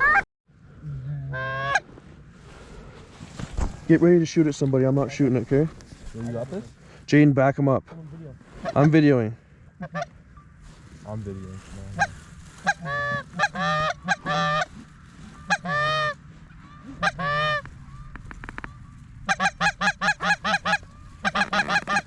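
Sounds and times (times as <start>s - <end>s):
goose call clucks: 1.3s - 1.9s, 9.8s - 10.2s, 12.0s - 22.0s
goose call honks: 12.0s - 22.0s.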